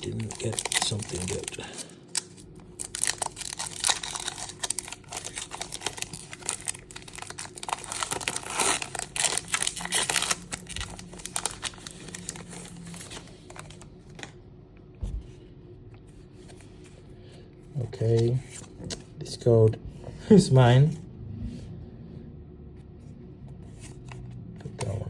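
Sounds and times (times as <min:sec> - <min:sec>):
foil wrapper crinkling and tearing: 0:00.0 - 0:14.3.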